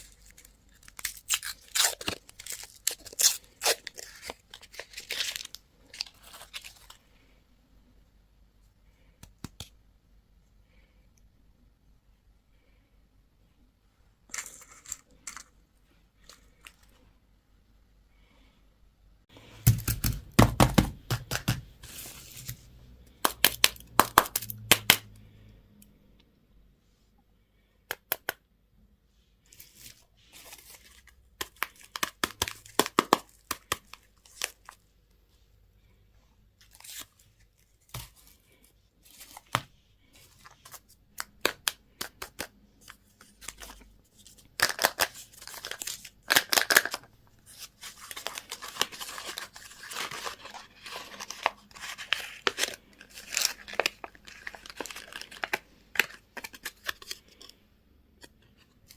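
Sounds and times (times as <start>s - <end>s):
candy wrappers crinkling: 0.0s - 7.0s, 14.3s - 15.5s, 29.5s - 34.8s, 36.6s - 57.6s.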